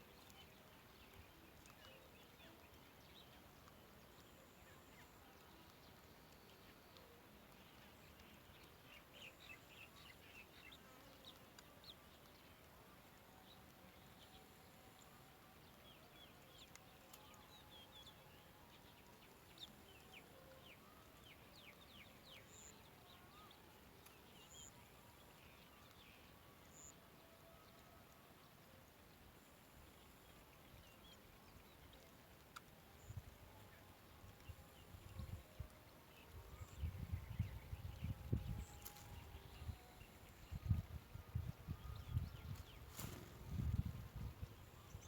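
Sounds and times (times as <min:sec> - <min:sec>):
small birds chirping: 0:00.0 - 0:26.9
low background hiss: 0:00.0 - 0:45.0.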